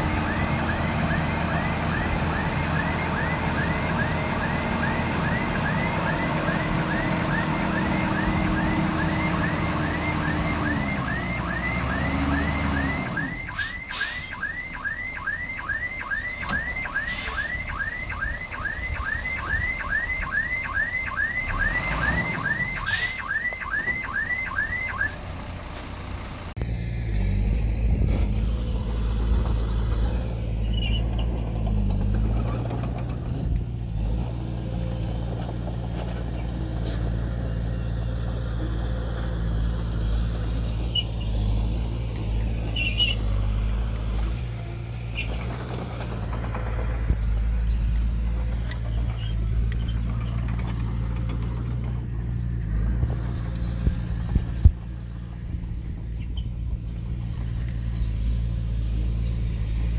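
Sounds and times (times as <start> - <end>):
diesel engine running: 0.0 - 14.3, 16.2 - 59.9
reversing alarm chirping: 0.0 - 25.2, 48.1 - 54.7
heavy equipment noise: 41.1 - 59.9.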